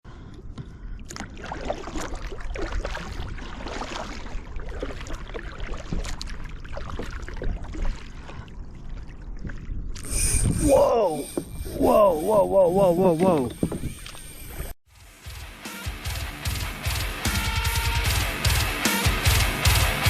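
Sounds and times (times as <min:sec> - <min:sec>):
water splashing and gurgling: 0:00.9 - 0:14.8.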